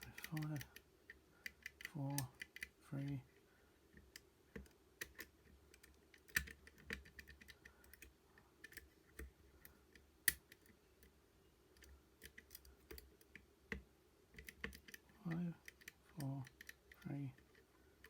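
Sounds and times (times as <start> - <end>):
lock pick clicking in a lock: 5.0 - 8.8.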